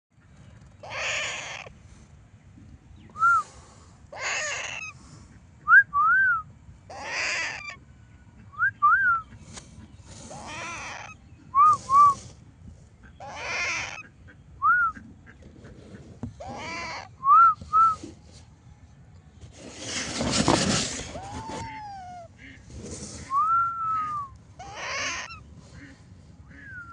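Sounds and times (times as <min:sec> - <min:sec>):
parrot squawking: 0:00.8 - 0:01.7, 0:04.2 - 0:05.0, 0:06.9 - 0:07.8, 0:10.3 - 0:11.2, 0:13.2 - 0:14.1, 0:16.4 - 0:17.2, 0:21.1 - 0:22.3, 0:24.6 - 0:25.5.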